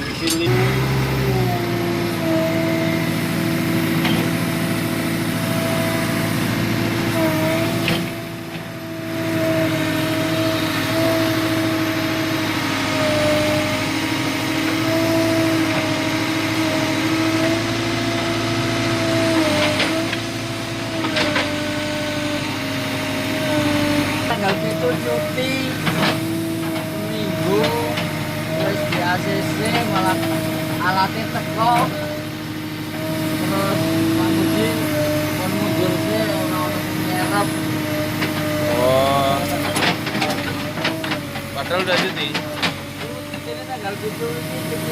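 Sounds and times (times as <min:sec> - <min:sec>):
diesel engine running: 0:00.0 - 0:44.9.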